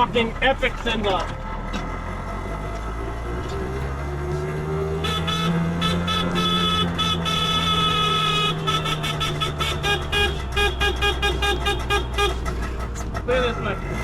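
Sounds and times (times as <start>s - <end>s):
two-stroke engine running: 0.0s - 14.0s
vehicle horn tooting: 4.8s - 13.1s.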